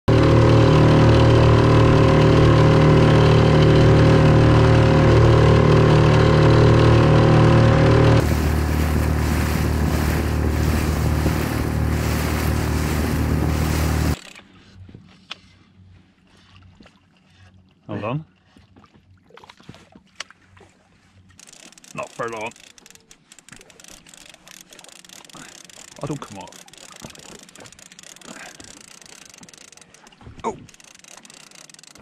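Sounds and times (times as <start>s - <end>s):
outboard motor running: 0.1s - 14.2s, 20.9s - 32.0s.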